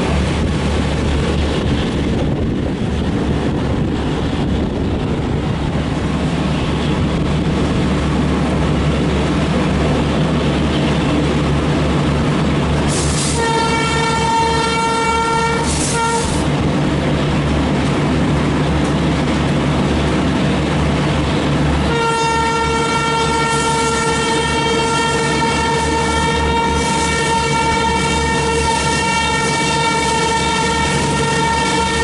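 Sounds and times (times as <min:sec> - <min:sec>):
rumble of moving train: 0:00.0 - 0:32.0
locomotive horn blasts: 0:12.9 - 0:16.5, 0:21.8 - 0:32.0.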